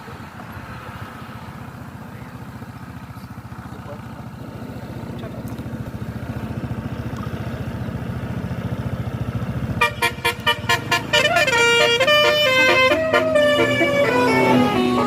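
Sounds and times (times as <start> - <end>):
bus engine running: 0.0 - 15.0
bus horn melody: 9.6 - 15.0.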